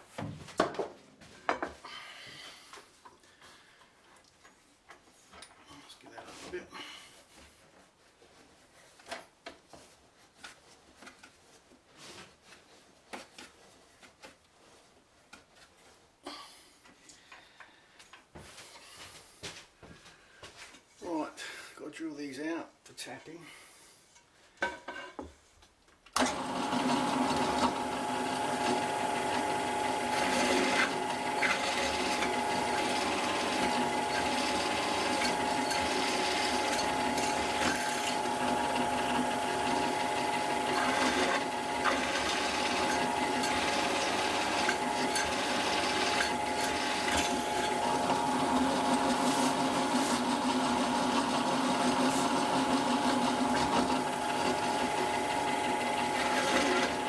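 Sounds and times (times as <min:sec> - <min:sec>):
electric drill drilling aluminium: 0:26.2 - 0:57.0.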